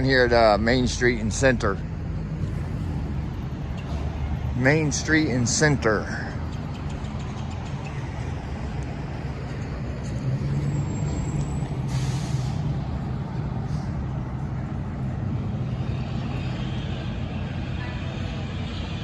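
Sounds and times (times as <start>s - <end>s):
fire truck diesel engine: 0.0s - 19.0s
air brakes hissing: 11.0s - 12.9s, 13.6s - 14.1s.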